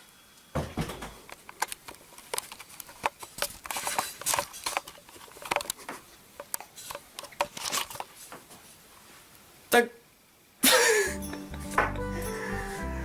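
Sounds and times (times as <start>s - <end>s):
objects rustling: 0.6s - 9.3s.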